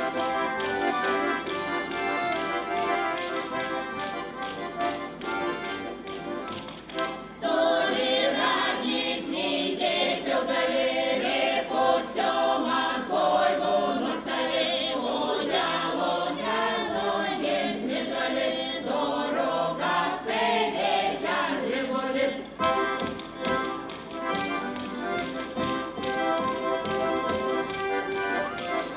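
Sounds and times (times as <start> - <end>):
choir singing sustained notes: 7.4 - 22.6.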